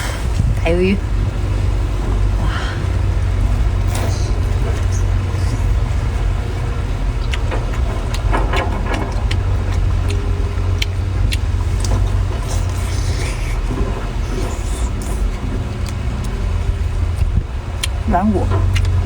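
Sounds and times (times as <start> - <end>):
steady low rumble: 0.0 - 19.0
chewing clicks and crackles: 3.8 - 19.0.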